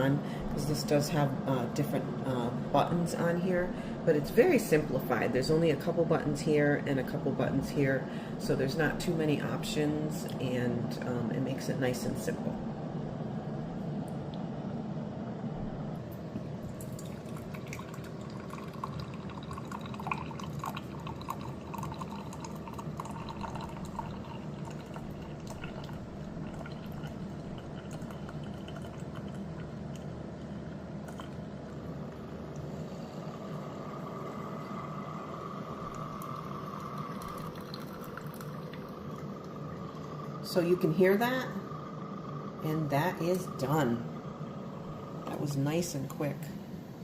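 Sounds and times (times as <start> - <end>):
coffee machine humming: 0.0 - 47.0
faint steady whine: 0.0 - 47.0
coffee dripping into cup: 16.1 - 45.4.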